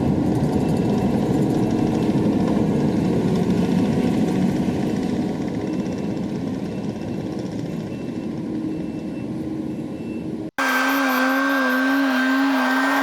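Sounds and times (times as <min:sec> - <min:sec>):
sped up roller engine drone: 0:10.6 - 0:13.0.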